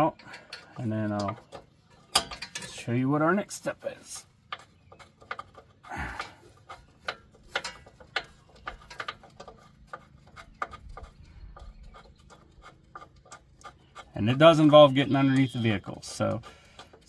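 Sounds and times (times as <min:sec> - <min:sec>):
hand ratchet clicking: 0:04.5 - 0:14.7.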